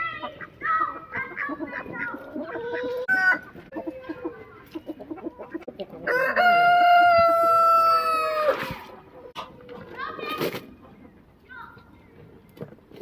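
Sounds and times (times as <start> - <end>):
chickens clucking: 0.0 - 13.0
rooster crowing: 6.1 - 8.6.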